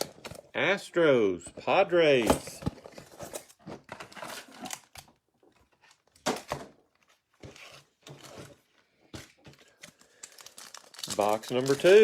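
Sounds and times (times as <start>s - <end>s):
trading cards rustling: 9.2s - 12.0s
packaging clicks: 9.6s - 12.0s.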